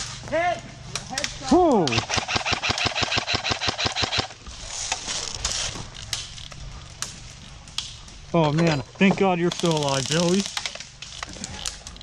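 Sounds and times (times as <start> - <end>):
airsoft gun full-auto burst: 1.9 - 4.4.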